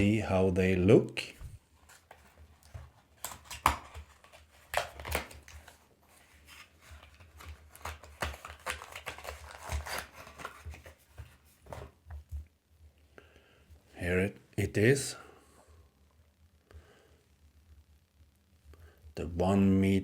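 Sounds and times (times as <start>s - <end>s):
packaging rustling and clicking: 1.8s - 12.5s.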